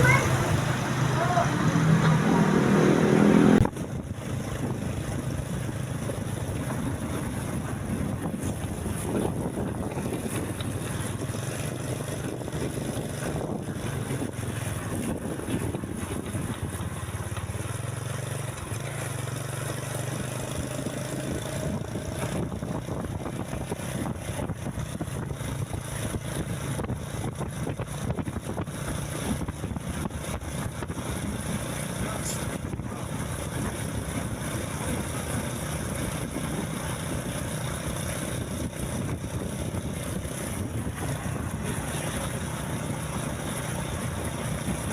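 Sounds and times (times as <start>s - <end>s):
road noise: 0.0s - 44.9s
vehicle engine humming: 0.0s - 44.9s.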